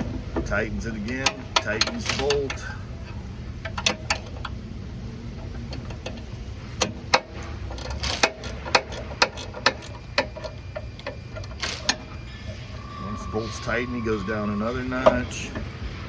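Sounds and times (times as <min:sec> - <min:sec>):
steady low hum: 0:00.0 - 0:16.0
wrench clicking on metal: 0:01.0 - 0:04.6, 0:05.7 - 0:12.1.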